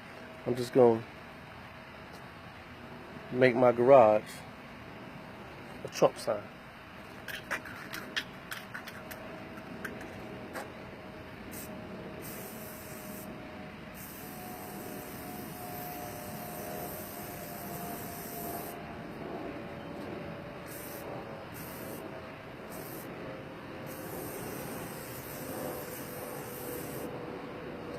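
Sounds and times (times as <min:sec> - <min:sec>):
spray-paint can hissing: 0:11.5 - 0:13.3, 0:13.9 - 0:18.8, 0:20.6 - 0:22.0, 0:22.7 - 0:23.1, 0:23.8 - 0:27.1.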